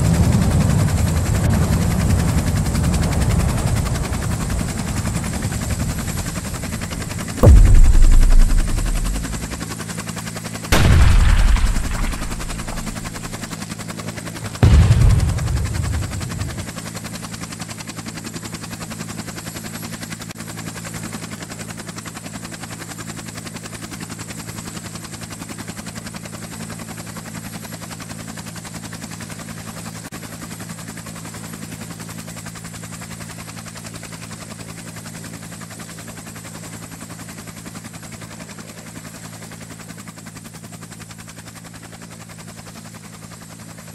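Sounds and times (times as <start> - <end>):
low mechanical drone with flutter: 0.0 - 9.9, 10.7 - 13.6, 14.4 - 17.0
loud booms: 7.4 - 9.6, 10.8 - 13.4, 14.6 - 16.7.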